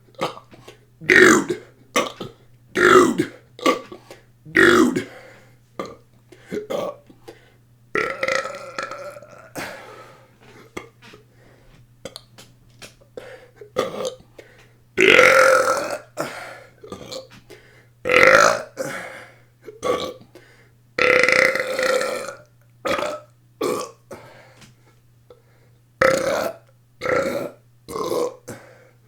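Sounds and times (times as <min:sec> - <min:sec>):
person burping: 0:00.1 - 0:05.2, 0:05.8 - 0:07.1, 0:08.0 - 0:10.0, 0:13.7 - 0:14.2, 0:15.0 - 0:17.3, 0:18.1 - 0:19.0, 0:19.7 - 0:20.2, 0:21.0 - 0:24.2, 0:26.0 - 0:28.6.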